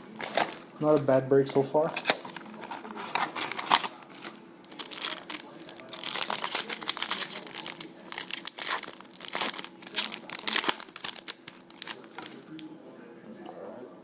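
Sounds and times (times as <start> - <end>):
wrapper torn open and crinkled: 0.0 - 0.7, 3.0 - 12.4.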